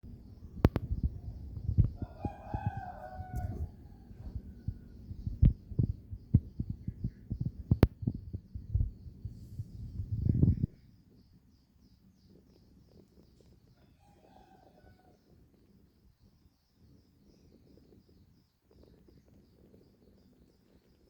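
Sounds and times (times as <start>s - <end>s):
low thumps and knocks: 0.6s - 10.8s
rooster crowing: 2.0s - 5.0s, 13.8s - 15.2s.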